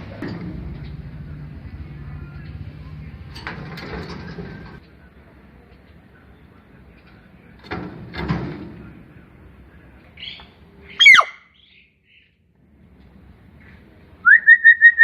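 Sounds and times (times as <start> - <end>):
soft rough bird sounds: 9.6 - 14.1
bird squawking: 10.2 - 11.8.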